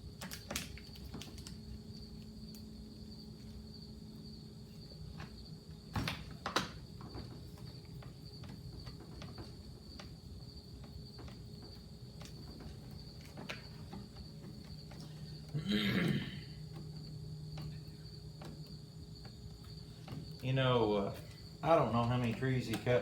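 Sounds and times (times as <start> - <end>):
high insect trill: 0.0 - 23.0
light clicks and taps: 21.2 - 23.0.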